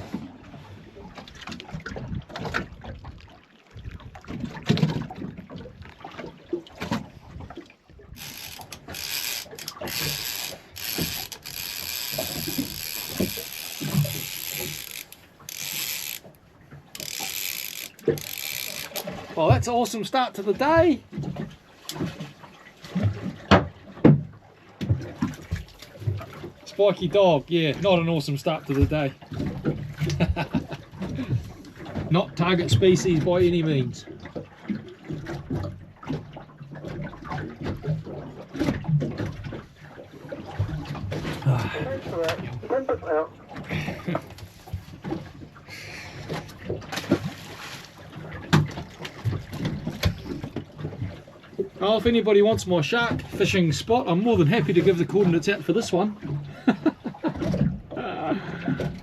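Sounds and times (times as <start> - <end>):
water splashing: 0.0 - 59.0
fishing reel ratcheting: 8.2 - 19.2.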